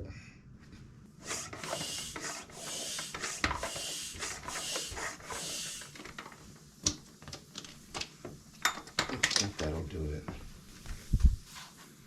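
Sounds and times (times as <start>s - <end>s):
bicycle pump strokes: 1.2s - 6.6s.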